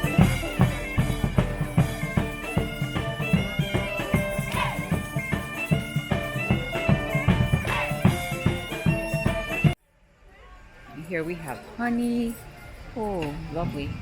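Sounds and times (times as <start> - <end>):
bagpipe melody: 0.0 - 9.8
quick drum beat: 0.0 - 9.8.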